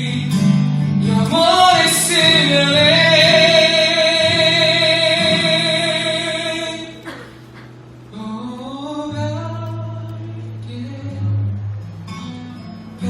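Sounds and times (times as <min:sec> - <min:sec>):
acoustic guitar: 0:00.0 - 0:13.0
person singing: 0:01.0 - 0:07.2.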